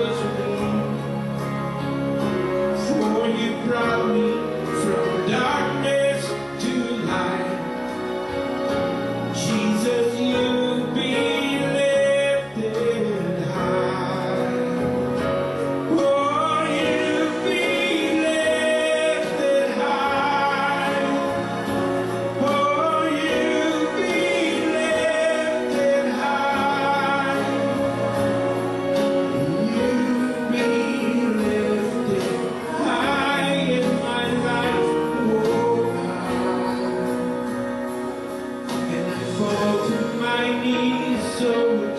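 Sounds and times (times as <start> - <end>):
instrumental accompaniment: 0.0 - 41.9
voices singing worship song: 16.0 - 37.4.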